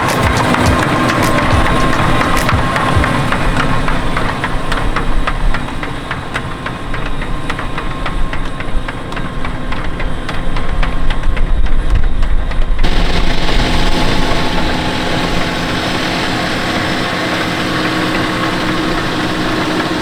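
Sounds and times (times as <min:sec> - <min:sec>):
sharp clicking and knocking: 0:00.0 - 0:03.6
tractor diesel engine running: 0:00.0 - 0:08.5, 0:12.8 - 0:20.0.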